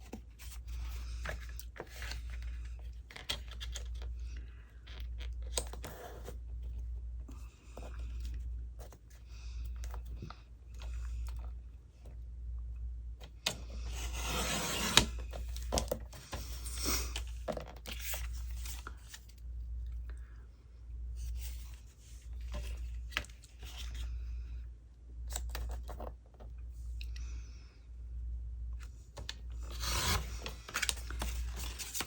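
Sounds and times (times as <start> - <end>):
steady low hum: 0.0 - 32.0
paper rustling and scraping: 13.8 - 19.4, 29.5 - 32.0.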